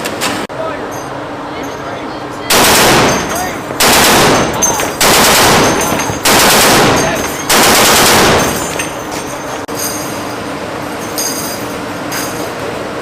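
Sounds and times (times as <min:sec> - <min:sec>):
heavy machine gun bursts: 0:02.5 - 0:08.8.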